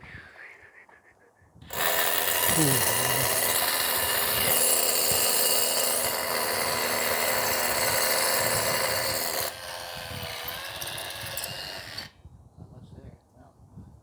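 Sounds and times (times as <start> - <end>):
hammer drill boring into concrete: 1.7 - 12.1.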